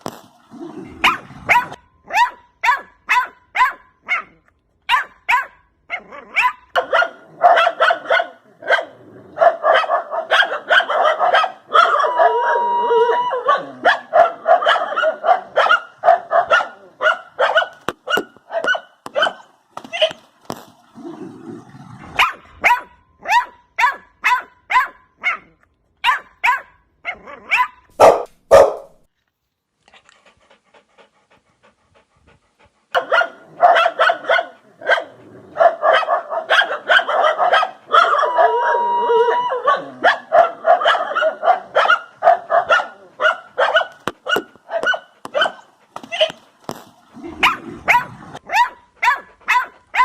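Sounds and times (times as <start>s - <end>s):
dog barking sharply: 1.0s - 4.3s, 4.9s - 5.6s, 6.4s - 12.1s, 13.4s - 19.4s, 22.2s - 29.1s, 33.0s - 38.4s, 39.6s - 46.4s, 47.4s - 50.0s.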